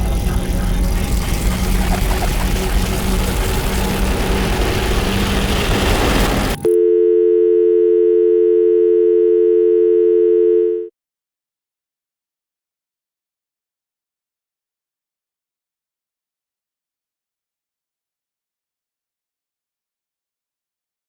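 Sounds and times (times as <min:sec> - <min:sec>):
loud dense mixed noise: 0:00.0 - 0:06.7
telephone dial tone: 0:06.6 - 0:10.9.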